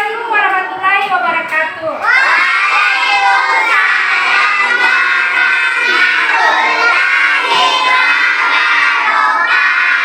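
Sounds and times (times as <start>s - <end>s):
children shouting together: 2.0s - 10.0s.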